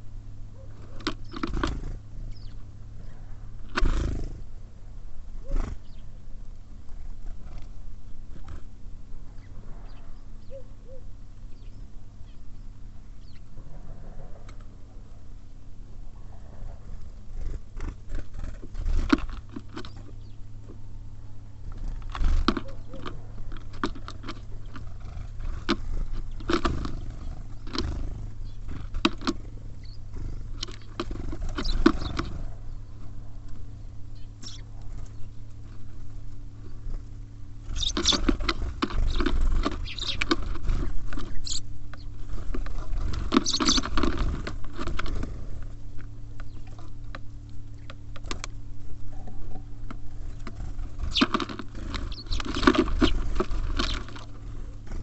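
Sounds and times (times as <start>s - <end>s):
birds pecking at seeds: 0.0s - 4.6s, 5.4s - 55.0s
steady low hum: 0.0s - 55.0s.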